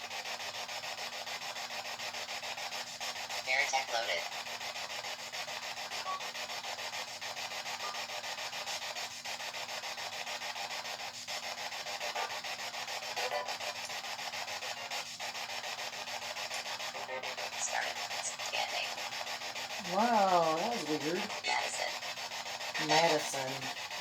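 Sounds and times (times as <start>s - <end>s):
radio static sweeping: 11.6s - 24.0s.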